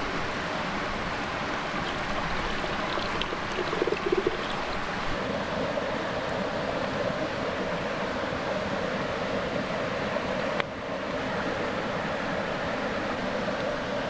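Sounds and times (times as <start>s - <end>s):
creek water running: 0.0s - 5.2s.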